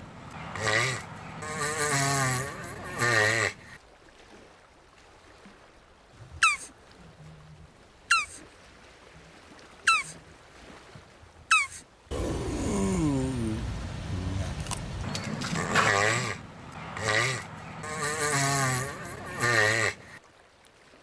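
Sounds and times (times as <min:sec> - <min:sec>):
tortoise moaning call: 0:00.3 - 0:03.8, 0:11.5 - 0:20.2.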